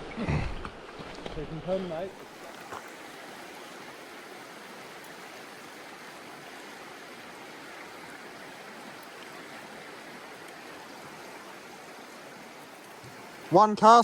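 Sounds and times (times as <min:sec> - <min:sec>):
river rushing: 0:00.7 - 0:14.0.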